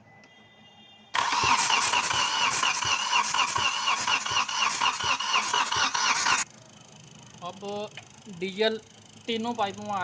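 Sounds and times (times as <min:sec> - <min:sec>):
starter motor cranking engine: 0:01.2 - 0:06.5.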